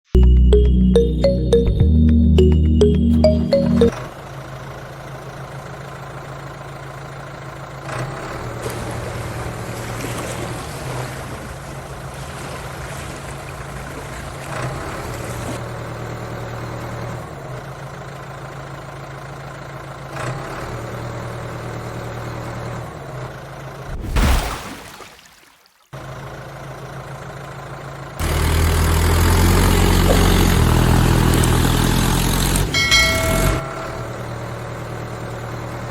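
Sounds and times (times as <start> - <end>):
engine humming: 28.2 - 35.9.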